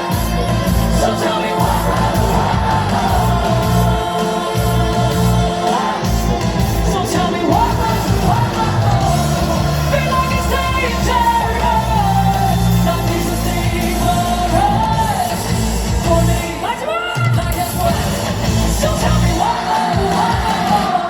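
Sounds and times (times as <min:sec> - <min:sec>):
live pop song over loudspeakers: 0:00.0 - 0:21.0
person singing: 0:00.0 - 0:21.0.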